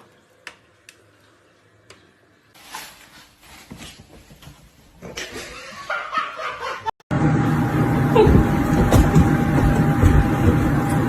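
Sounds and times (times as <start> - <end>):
scuffling noises: 8.1 - 11.0.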